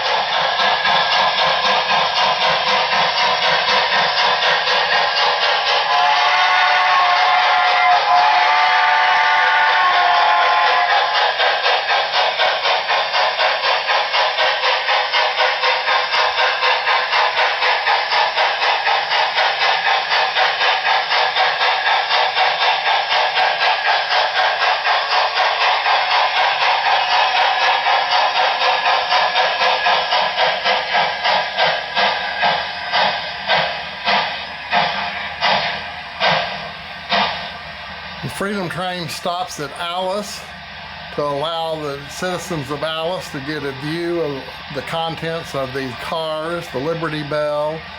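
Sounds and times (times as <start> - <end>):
model steam locomotive chuffing: 0.0 - 47.9.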